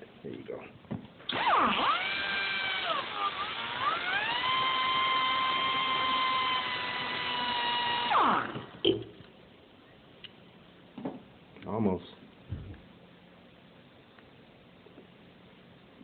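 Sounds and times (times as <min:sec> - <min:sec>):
power cut-off tool whine: 0:01.2 - 0:08.8.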